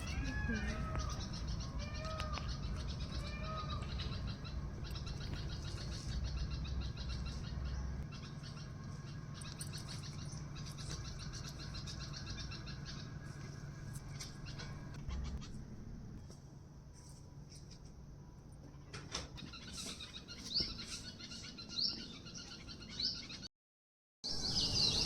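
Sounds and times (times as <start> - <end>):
drawn-out rising and falling bird calls: 0.0 - 15.6
small birds chirping: 0.0 - 15.6, 18.7 - 23.5, 24.3 - 25.0.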